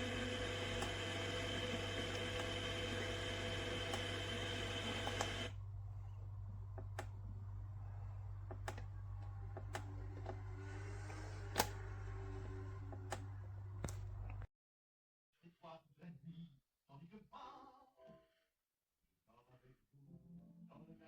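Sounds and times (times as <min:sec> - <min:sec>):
low steady hum: 0:00.0 - 0:14.5.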